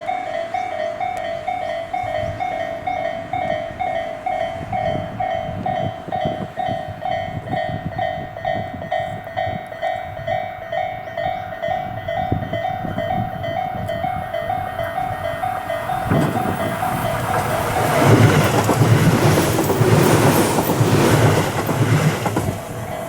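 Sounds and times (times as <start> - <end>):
level crossing warning bell: 0.0 - 23.0
train rumbling: 0.2 - 23.0
train wheels clattering: 12.3 - 23.0.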